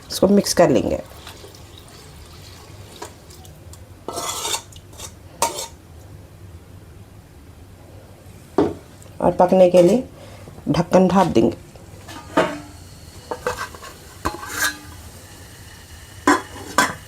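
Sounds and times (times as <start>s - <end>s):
spoon scraping and clinking: 4.1s - 5.8s
spoon stirring rice in pot: 4.1s - 5.8s.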